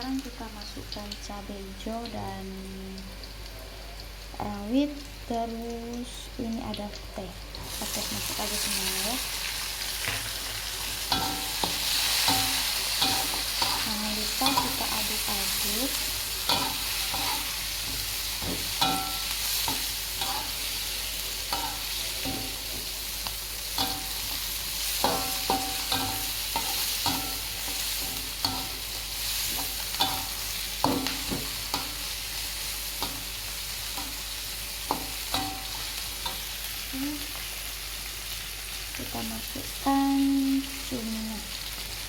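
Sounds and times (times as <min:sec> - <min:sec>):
food sizzling in hot oil: 0:00.0 - 0:42.0
spatula scraping a wok: 0:10.9 - 0:36.6.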